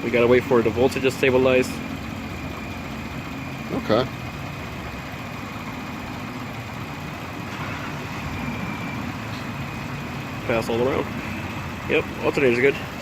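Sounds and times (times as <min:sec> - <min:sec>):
minivan engine idling: 0:00.0 - 0:13.0.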